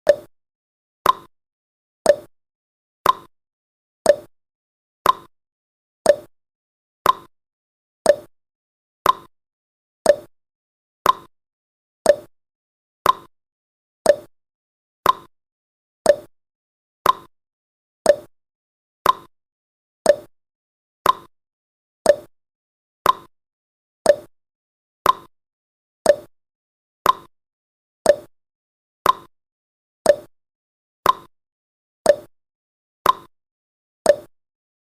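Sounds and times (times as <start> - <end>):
clock ticking: 2.1 - 2.3, 4.1 - 4.3, 6.1 - 6.3, 8.1 - 8.3, 9.0 - 9.3, 10.1 - 10.3, 11.0 - 11.3, 12.1 - 12.3, 13.0 - 13.3, 14.1 - 14.3, 15.0 - 15.3, 16.1 - 16.3, 17.0 - 17.3, 18.1 - 18.3, 20.1 - 20.3, 21.0 - 21.3, 22.1 - 22.3, 23.0 - 23.3, 24.1 - 24.3, 26.1 - 26.3, 27.0 - 27.3, 28.1 - 28.3, 29.0 - 29.3, 30.1 - 30.3, 31.0 - 31.3, 32.1 - 32.3, 33.0 - 33.3, 34.1 - 34.3.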